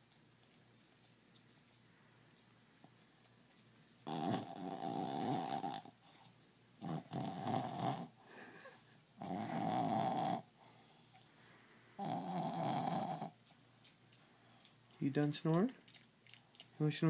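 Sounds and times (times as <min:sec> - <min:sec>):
dog snoring: 0:04.0 - 0:05.9, 0:06.8 - 0:08.2, 0:09.2 - 0:11.2, 0:12.0 - 0:13.4.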